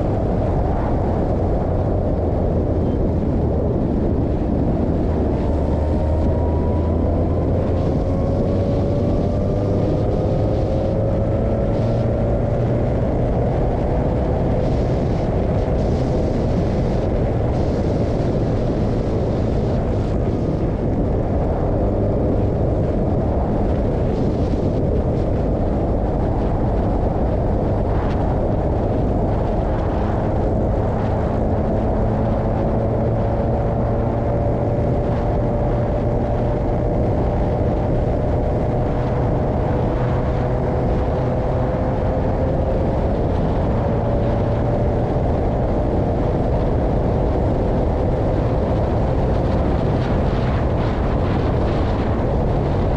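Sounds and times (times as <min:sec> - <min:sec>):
wind and road noise: 0:00.0 - 0:52.9
race car engine: 0:03.6 - 0:26.0.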